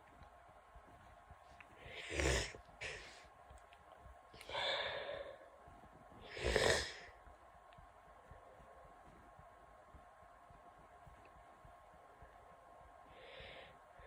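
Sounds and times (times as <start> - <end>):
nasal breathing: 1.6 - 3.4, 4.4 - 7.3, 13.0 - 14.0.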